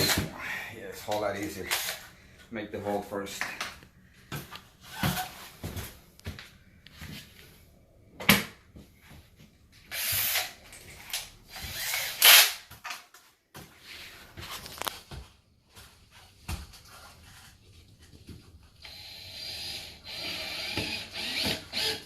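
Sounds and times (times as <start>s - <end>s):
power drill on sheet metal: 9.9s - 10.6s, 11.5s - 12.6s, 18.8s - 22.0s.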